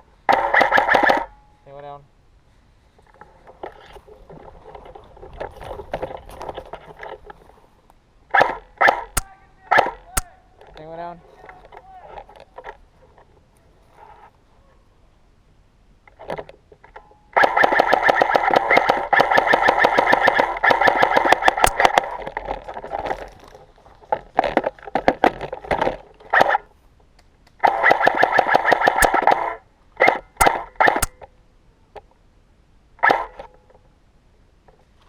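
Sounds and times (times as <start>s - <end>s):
airsoft rifle automatic fire: 17.4s - 22.1s, 27.6s - 31.2s.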